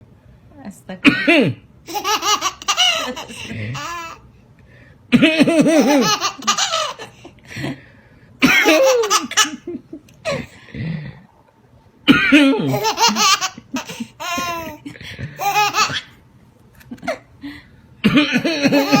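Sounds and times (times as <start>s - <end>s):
baby laughing: 1.9s - 4.2s, 5.3s - 7.2s, 8.4s - 10.4s, 12.4s - 16.2s, 18.1s - 19.0s
baby coughing: 8.4s - 9.6s, 18.0s - 19.0s.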